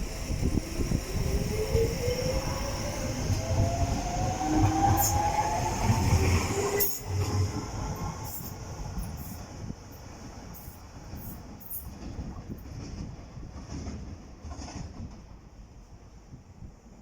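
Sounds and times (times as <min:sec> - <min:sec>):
train wheels clunking on track: 0:10.5 - 0:15.5.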